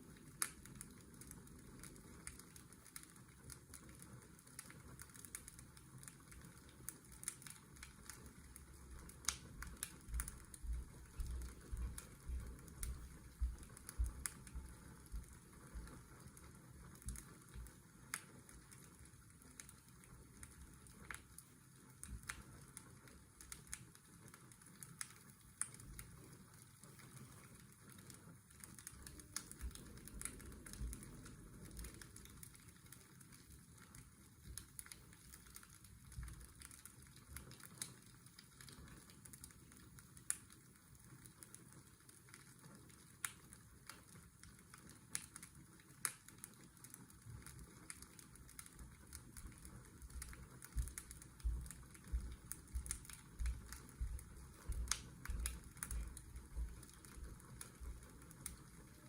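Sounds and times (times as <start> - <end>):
fire crackling and popping: 0.0 - 59.0
steady white noise hiss: 0.0 - 59.0.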